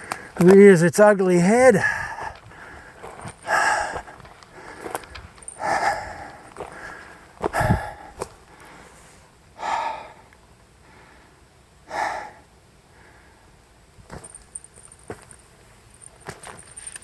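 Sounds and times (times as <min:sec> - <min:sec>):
person breathing heavily: 0:00.0 - 0:00.4, 0:01.8 - 0:13.6.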